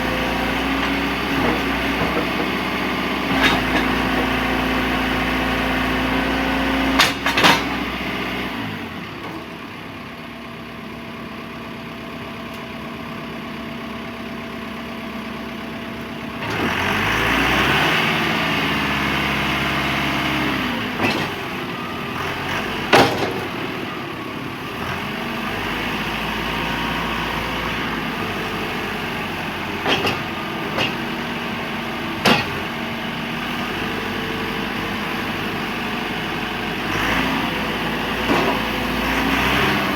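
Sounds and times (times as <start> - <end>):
diesel engine running: 0.0 - 39.9
sharp metallic clanks: 32.2 - 32.7.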